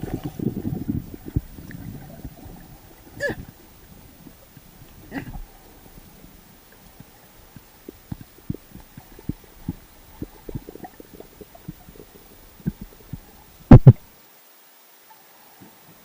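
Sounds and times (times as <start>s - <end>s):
muffled underwater knocks and clicks: 0.0s - 14.0s
loud thumps: 13.7s - 14.0s.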